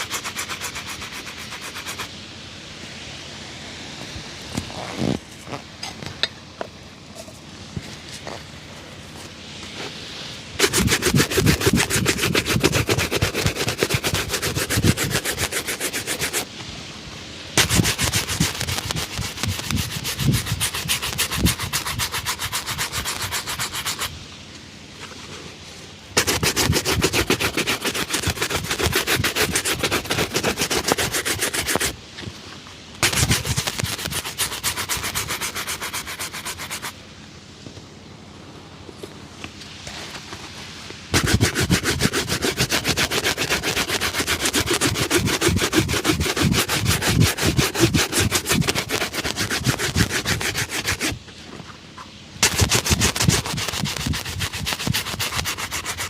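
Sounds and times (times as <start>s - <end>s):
shoe being buffed: 0.0s - 2.1s, 4.6s - 5.5s, 10.6s - 16.5s, 17.6s - 24.1s, 26.2s - 32.0s, 33.0s - 36.9s, 41.1s - 51.2s, 52.4s - 56.0s.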